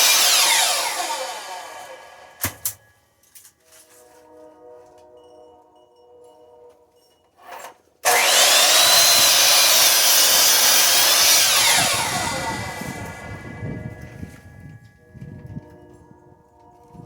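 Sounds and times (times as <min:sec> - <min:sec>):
saw motor winding down: 0:00.0 - 0:02.4, 0:08.1 - 0:14.3
miter saw cutting wood: 0:00.0 - 0:02.6, 0:08.0 - 0:14.3.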